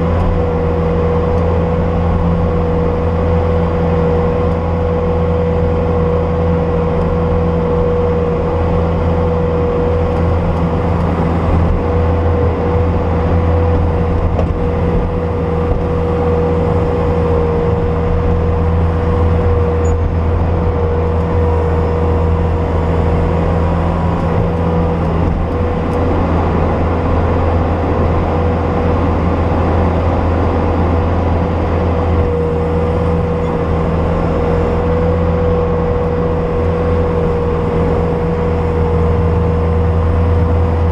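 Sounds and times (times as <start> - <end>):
diesel engine running: 0.0 - 40.9
steady whine: 0.0 - 40.9.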